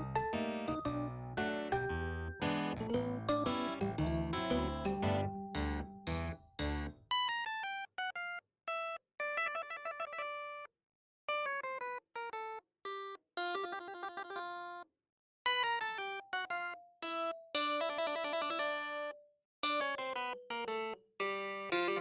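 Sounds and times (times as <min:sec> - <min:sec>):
strummed guitar chord: 0:00.0 - 0:06.9
plinky electronic melody: 0:00.0 - 0:07.0.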